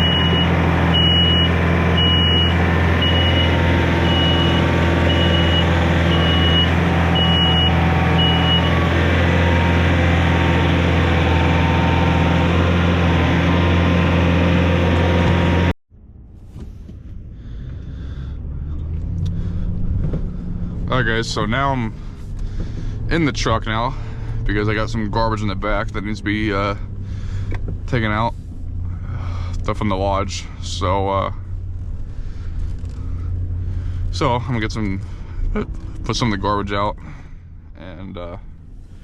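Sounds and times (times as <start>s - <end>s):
backup alarm beeping: 0.0s - 9.8s
vehicle engine running: 0.0s - 39.0s.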